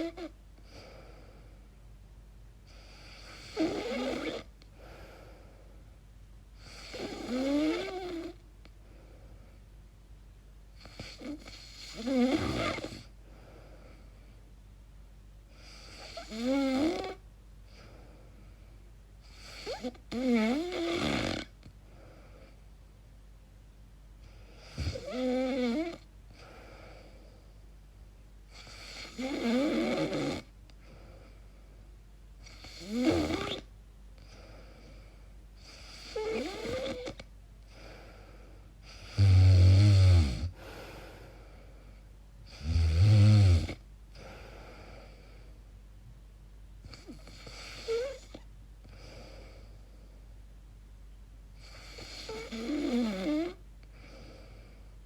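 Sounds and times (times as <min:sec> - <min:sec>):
woman snoring: 0:00.0 - 0:00.9, 0:03.0 - 0:04.5, 0:06.6 - 0:08.4, 0:10.8 - 0:13.1, 0:15.6 - 0:17.2, 0:19.3 - 0:21.6, 0:24.5 - 0:26.5, 0:28.5 - 0:30.5, 0:32.4 - 0:33.7, 0:35.6 - 0:38.0, 0:38.8 - 0:41.5, 0:42.4 - 0:45.2, 0:46.8 - 0:49.7, 0:51.6 - 0:54.8.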